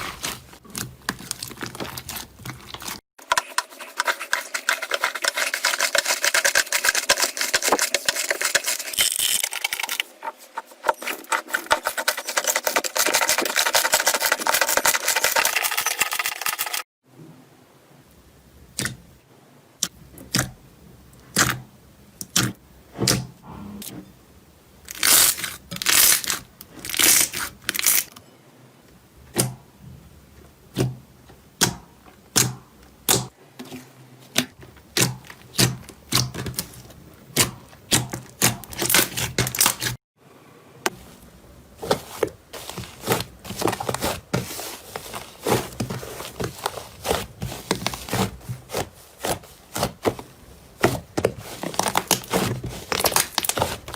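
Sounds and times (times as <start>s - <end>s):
crackly slime squelches: 0.0s - 3.1s, 40.9s - 53.9s
slime clicking and crackling: 51.6s - 53.9s.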